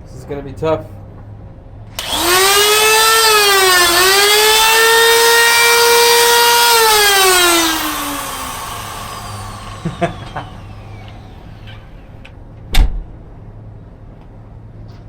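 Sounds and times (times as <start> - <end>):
power drill motor whining: 1.9 - 12.2.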